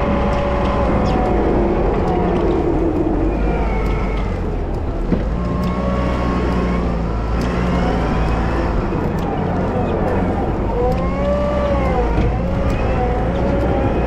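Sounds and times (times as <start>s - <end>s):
click: 0.0s - 14.0s
diesel engine under load: 0.0s - 14.0s
whining tones: 0.0s - 14.0s.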